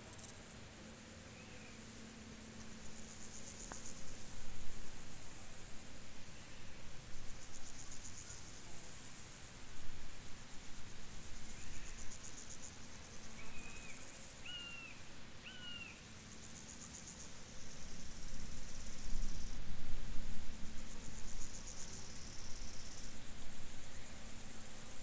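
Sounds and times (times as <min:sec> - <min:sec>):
insects chirping in trills: 0:00.0 - 0:25.0
bird whistling call: 0:13.4 - 0:16.0.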